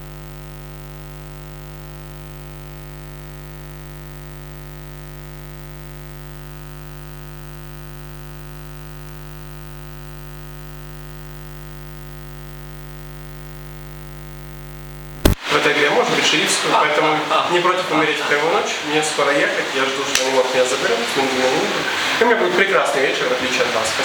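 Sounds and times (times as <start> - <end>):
electrical hum and buzz with hiss: 0.0 - 15.4.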